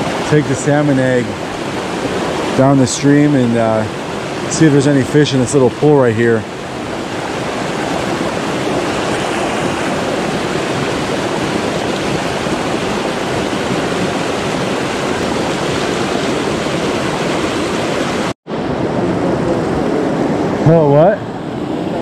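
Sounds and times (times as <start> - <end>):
fast-flowing river water: 0.0 - 22.0.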